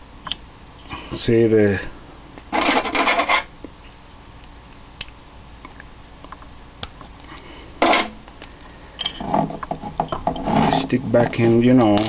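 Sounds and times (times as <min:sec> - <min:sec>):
low steady hum: 0:00.0 - 0:12.0
scrape: 0:02.6 - 0:03.5, 0:10.4 - 0:11.6.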